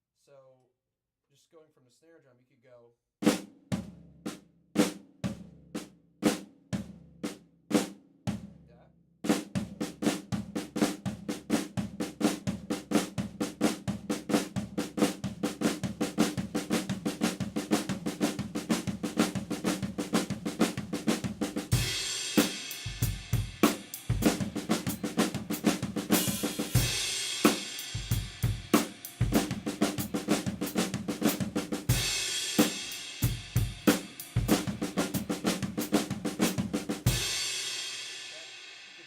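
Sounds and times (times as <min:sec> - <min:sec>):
snare and tom flams: 0:10.8 - 0:37.6
cymbal crash with bass drum: 0:21.6 - 0:36.0, 0:37.1 - 0:39.0.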